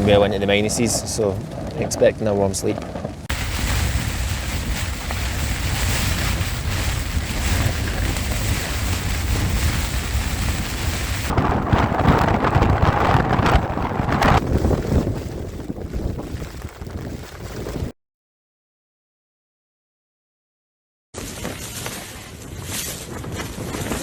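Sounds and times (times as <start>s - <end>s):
wind buffeting microphone: 0.0s - 17.9s, 21.2s - 24.0s
heavy rain: 3.1s - 17.2s.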